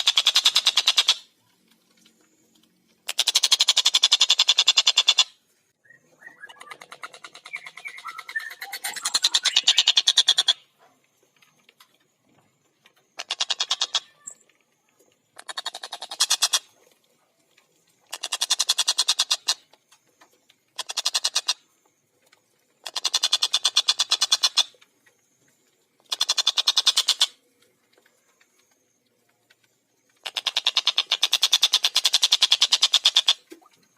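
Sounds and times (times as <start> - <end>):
kingfisher chattering calls: 6.3 - 10.6, 13.2 - 14.2.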